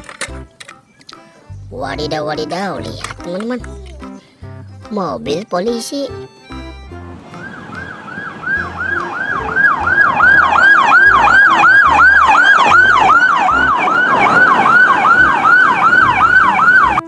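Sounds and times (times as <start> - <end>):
police siren fast wail: 7.3 - 17.0.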